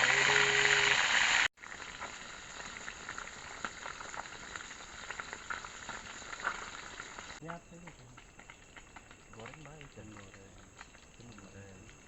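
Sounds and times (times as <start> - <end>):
loud hiss: 0.0 - 1.5
food sizzling in oil: 0.0 - 12.0.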